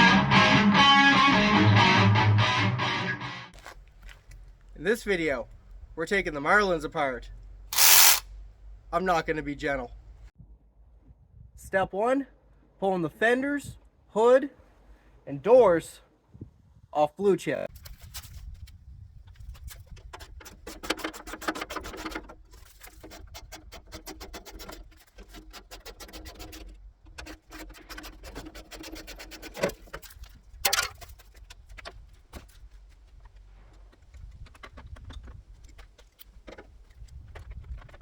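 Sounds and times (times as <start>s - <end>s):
ratchet clicking: 7.8s - 8.2s.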